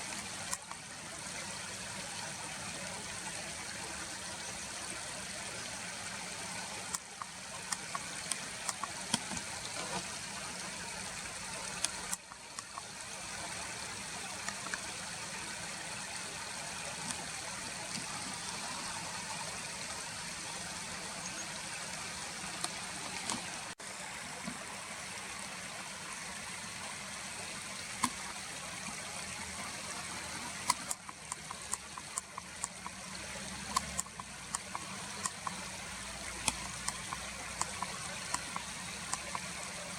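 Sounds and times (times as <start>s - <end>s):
small clicks: 0.0s - 0.8s, 6.8s - 10.5s, 11.5s - 12.9s, 14.2s - 14.9s, 22.6s - 23.6s, 30.5s - 39.9s
stream water flowing: 0.0s - 39.9s.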